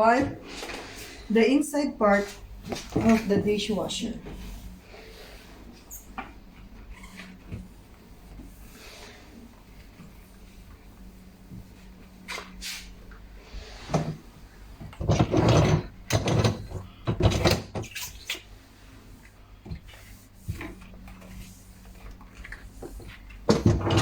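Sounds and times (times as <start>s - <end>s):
dishwasher interior knocks and clatter: 14.8s - 17.9s, 23.4s - 24.0s.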